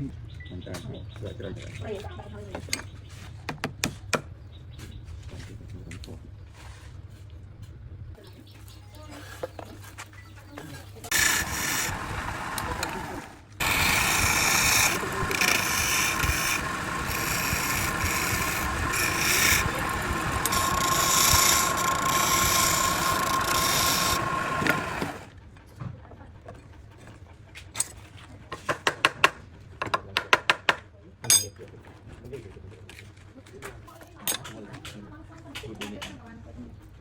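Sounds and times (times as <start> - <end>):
power tool cutting wood: 11.1 - 25.3.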